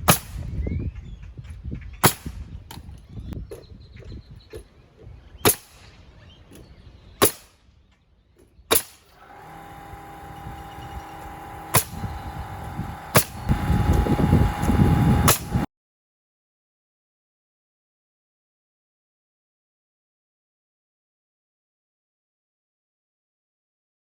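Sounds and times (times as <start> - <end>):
nail gun firing: 0.0 - 0.5, 2.0 - 2.8, 5.4 - 5.7, 7.2 - 7.5, 8.7 - 15.7
air compressor humming: 9.0 - 15.7.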